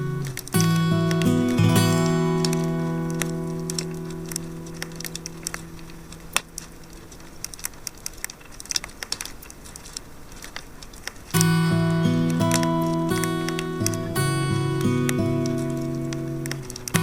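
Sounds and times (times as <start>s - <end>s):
acoustic guitar chord: 0.0s - 6.2s, 11.4s - 17.0s
campfire crackling: 0.0s - 17.0s.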